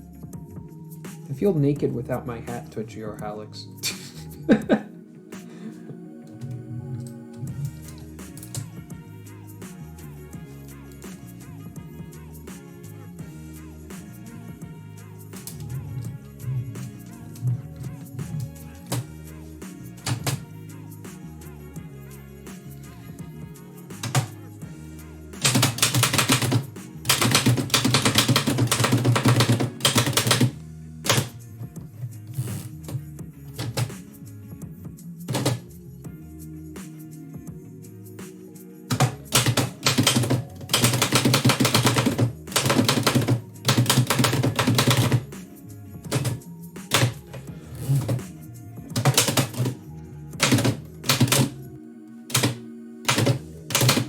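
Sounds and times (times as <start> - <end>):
instrumental background music: 0.0 - 54.0
typewriter keystrokes: 20.0 - 20.4, 24.0 - 24.3, 25.4 - 31.4, 33.6 - 34.0, 35.3 - 35.6, 38.9 - 45.3, 46.1 - 47.2, 48.9 - 49.8, 50.4 - 51.5, 52.3 - 54.0.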